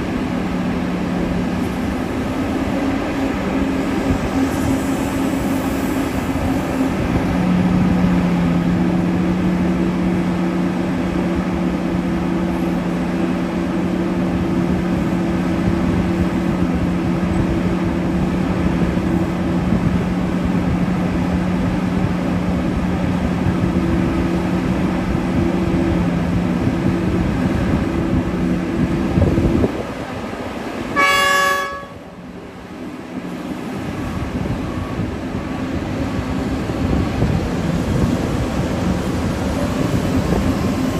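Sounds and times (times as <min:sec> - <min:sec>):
diesel engines droning: 0:00.0 - 0:40.9
short horn blast: 0:31.0 - 0:32.0.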